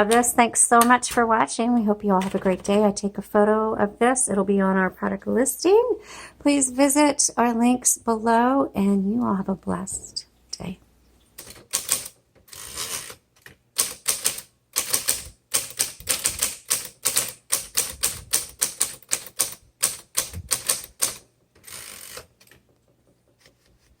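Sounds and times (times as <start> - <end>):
typewriter key strikes: 13.8 - 21.2.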